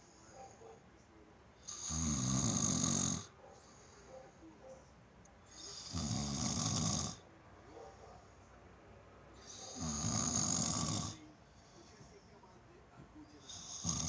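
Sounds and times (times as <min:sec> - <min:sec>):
person snoring with rattle: 0:01.7 - 0:03.3, 0:05.6 - 0:07.2, 0:09.5 - 0:11.2, 0:13.5 - 0:14.0.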